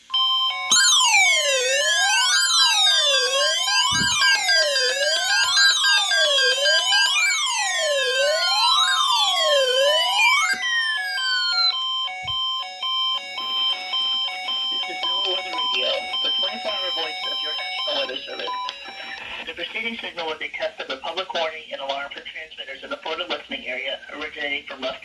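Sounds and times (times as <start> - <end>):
on-off beeping: 0.0 - 19.5
siren tone sweeping: 0.6 - 19.2.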